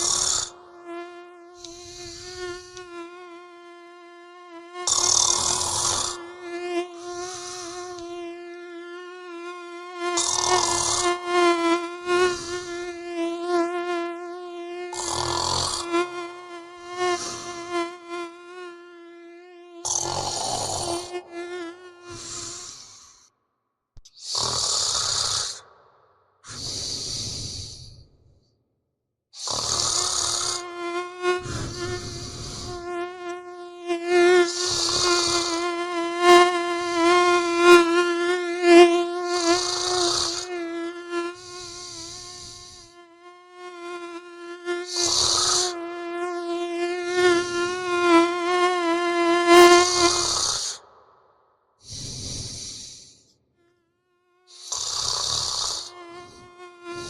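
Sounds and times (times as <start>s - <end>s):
person snoring: 0.0s - 0.6s, 1.6s - 2.8s, 4.8s - 6.4s, 7.0s - 8.1s, 10.2s - 11.3s, 12.2s - 12.9s, 14.9s - 15.9s, 16.9s - 17.7s, 19.8s - 23.3s, 24.1s - 25.7s, 26.5s - 28.2s, 29.4s - 30.7s, 31.4s - 32.9s, 34.4s - 35.6s, 39.3s - 40.5s, 41.3s - 43.0s, 44.8s - 45.8s, 49.7s - 50.8s, 51.8s - 53.2s, 54.5s - 57.0s
mosquito whine: 0.0s - 23.3s, 29.4s - 50.9s, 51.8s - 57.0s.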